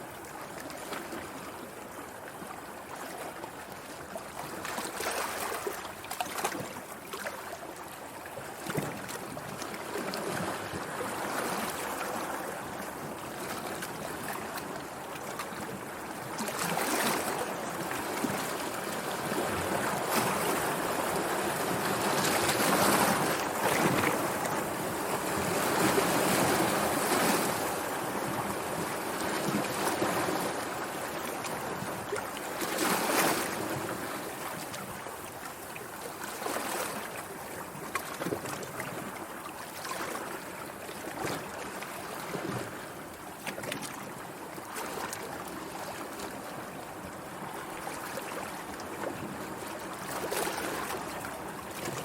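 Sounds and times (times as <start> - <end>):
sea waves breaking: 9.9 - 42.8.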